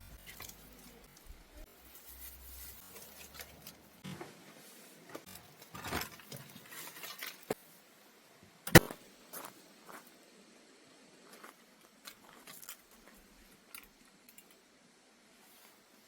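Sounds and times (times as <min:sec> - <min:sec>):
handling noises rustling: 0:00.0 - 0:07.6
sharp loud click: 0:08.7 - 0:09.0.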